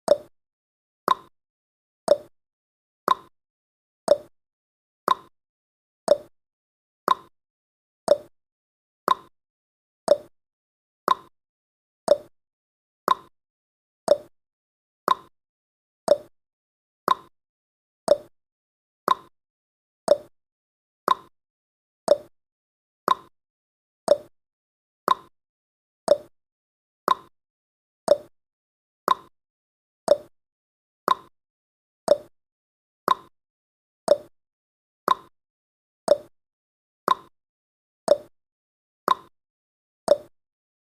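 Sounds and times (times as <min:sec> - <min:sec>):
timer ticking: 0:00.1 - 0:00.3, 0:01.1 - 0:01.3, 0:02.1 - 0:02.3, 0:03.1 - 0:03.3, 0:04.1 - 0:04.3, 0:05.1 - 0:05.3, 0:06.1 - 0:06.3, 0:07.1 - 0:07.3, 0:08.1 - 0:08.3, 0:09.1 - 0:09.3, 0:10.1 - 0:10.3, 0:11.1 - 0:11.3, 0:12.1 - 0:12.3, 0:13.1 - 0:13.3, 0:14.1 - 0:14.3, 0:15.1 - 0:15.3, 0:16.1 - 0:16.3, 0:17.1 - 0:17.3, 0:18.1 - 0:18.3, 0:19.1 - 0:19.3, 0:20.1 - 0:20.3, 0:21.1 - 0:21.3, 0:22.1 - 0:22.3, 0:24.1 - 0:24.3, 0:26.1 - 0:26.3, 0:28.1 - 0:28.3, 0:30.1 - 0:30.3, 0:31.1 - 0:31.3, 0:32.1 - 0:32.3, 0:34.1 - 0:34.3, 0:35.1 - 0:35.3, 0:36.1 - 0:36.3, 0:37.1 - 0:37.3, 0:38.1 - 0:38.3, 0:39.1 - 0:39.3, 0:40.1 - 0:40.3.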